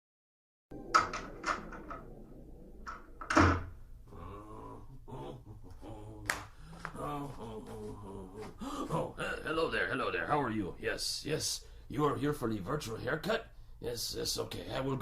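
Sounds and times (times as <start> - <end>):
door knocks and latch clicks: 2.9 - 3.7.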